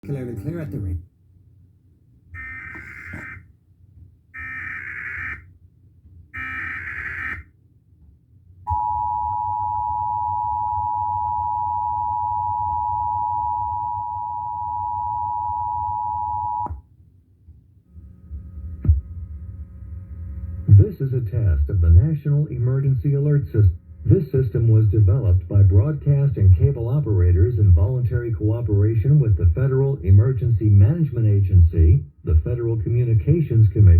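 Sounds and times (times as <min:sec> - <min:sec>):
steady two-tone attention signal: 0:08.7 - 0:16.7.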